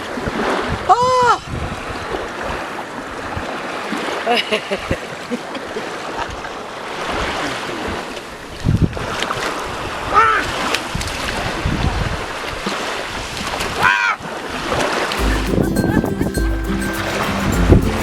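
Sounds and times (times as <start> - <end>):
wind buffeting microphone: 0.2 - 3.5, 8.4 - 13.8
ocean surf washing in: 14.8 - 18.0.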